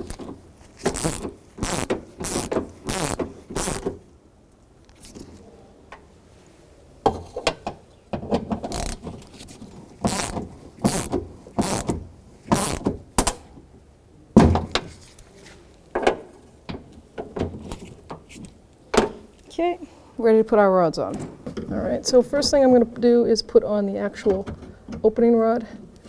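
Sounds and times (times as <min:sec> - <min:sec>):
socket ratchet clicking: 0:00.0 - 0:00.2, 0:00.9 - 0:03.9, 0:08.7 - 0:09.0, 0:10.1 - 0:11.9, 0:12.5 - 0:12.9.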